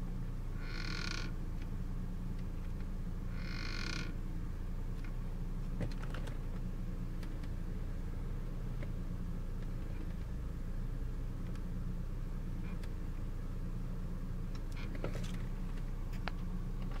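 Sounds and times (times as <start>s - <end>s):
car engine idling: 0.0s - 17.0s
steering wheel clicks and creaks: 0.6s - 4.2s, 4.9s - 7.6s, 8.7s - 10.4s, 11.4s - 11.7s, 12.6s - 13.0s, 14.5s - 17.0s.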